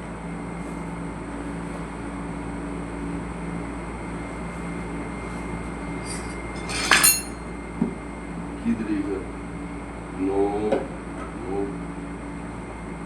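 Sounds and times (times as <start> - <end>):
low mechanical machine hum: 0.0 - 13.0
sharp clink: 6.1 - 7.4.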